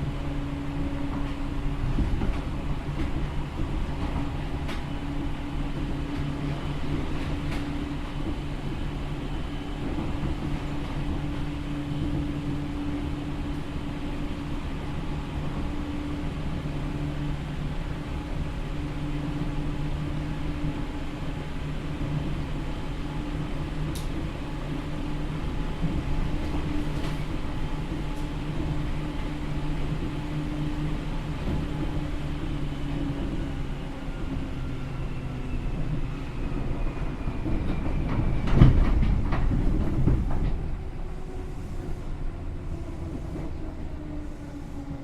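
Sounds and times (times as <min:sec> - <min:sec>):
train running hum and rail rumble: 0:00.0 - 0:45.0.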